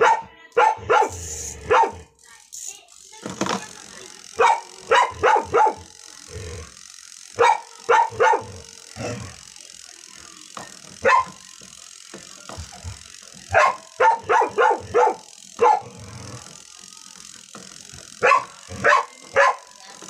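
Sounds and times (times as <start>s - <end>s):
dog barking: 0.0s - 2.1s, 4.4s - 5.9s, 7.4s - 9.2s, 11.0s - 11.4s, 13.5s - 16.0s, 18.2s - 19.7s.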